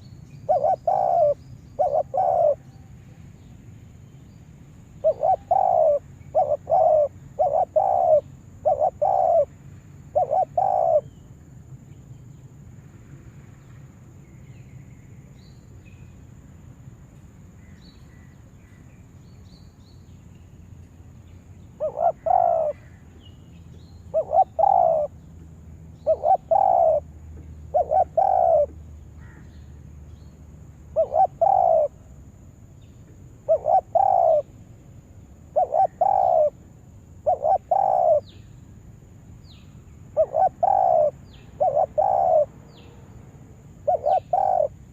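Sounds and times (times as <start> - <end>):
dove cooing: 0.0 - 2.7, 5.0 - 11.1, 21.8 - 23.0, 24.1 - 25.2, 26.0 - 27.1, 27.7 - 29.4, 30.9 - 32.0, 33.4 - 34.5, 35.5 - 38.4, 40.2 - 42.5, 43.7 - 44.9.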